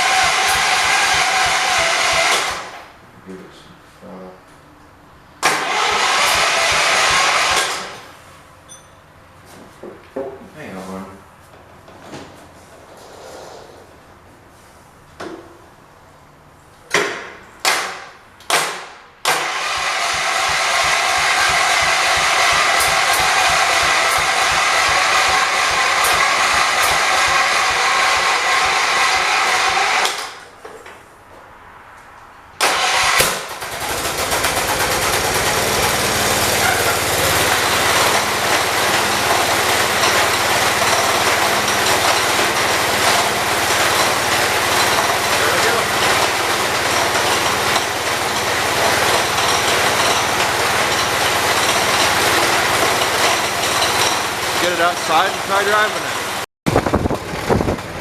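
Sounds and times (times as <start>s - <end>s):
garden tractor engine running: 0.0s - 2.9s, 5.5s - 8.0s, 19.3s - 30.4s, 32.6s - 58.0s.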